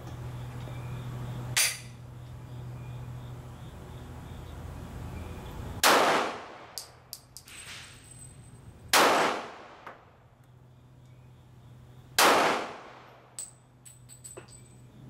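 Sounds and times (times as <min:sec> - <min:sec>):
pistol shots with echo: 0:05.8 - 0:07.0, 0:08.9 - 0:10.0, 0:12.2 - 0:13.2
light metallic clinks: 0:06.8 - 0:08.8, 0:13.3 - 0:15.0.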